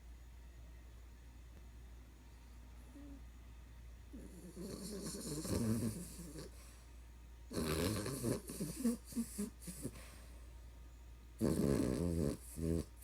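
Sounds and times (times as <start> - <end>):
puppy snoring: 2.8 - 3.3, 4.1 - 6.9, 7.5 - 10.3, 11.4 - 13.0.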